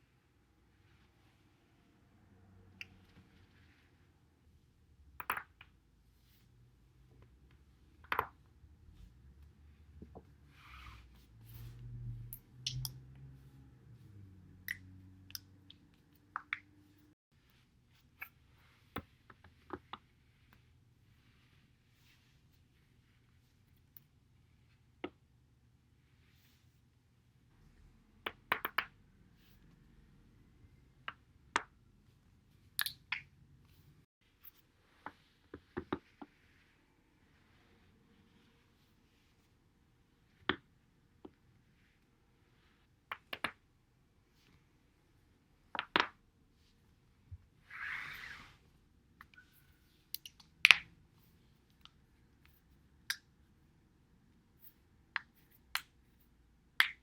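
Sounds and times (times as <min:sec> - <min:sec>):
low rumble of foam roller: 0:08.7 - 0:15.2.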